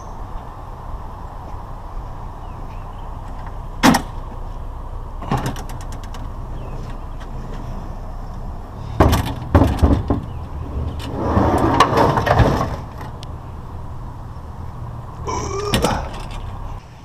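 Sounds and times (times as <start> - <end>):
rattling and scraping: 5.2 - 13.5, 15.6 - 16.8.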